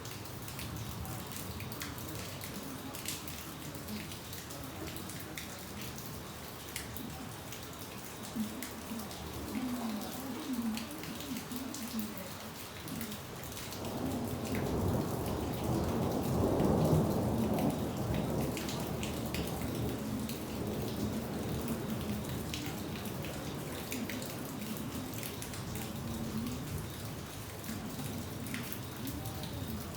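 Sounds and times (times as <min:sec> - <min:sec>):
rain drops pattering: 0:00.0 - 0:29.9
low roll of thunder: 0:13.4 - 0:29.9.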